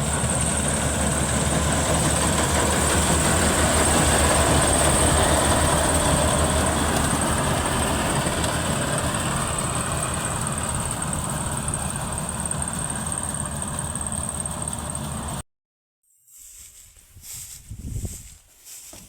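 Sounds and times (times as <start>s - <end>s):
harvester engine drone: 0.0s - 15.4s.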